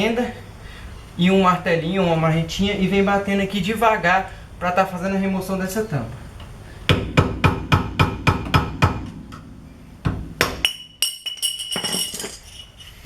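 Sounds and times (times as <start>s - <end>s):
high ringing tone: 7.0s - 12.9s.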